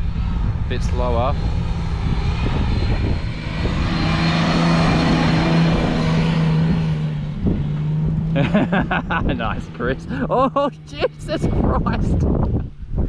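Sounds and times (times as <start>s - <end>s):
person speaking: 9.6s - 12.1s.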